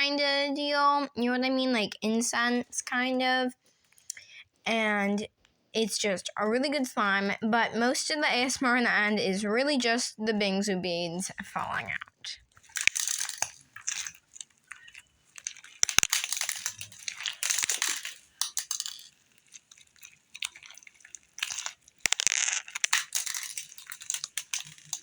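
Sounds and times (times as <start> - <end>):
slime beads crunching: 11.5 - 25.0.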